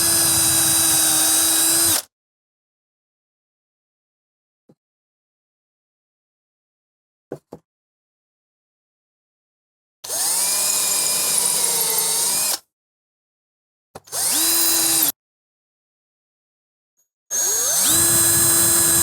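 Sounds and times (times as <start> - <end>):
power drill whine: 0.0 - 2.0, 10.1 - 12.6, 14.1 - 15.1, 17.3 - 19.0.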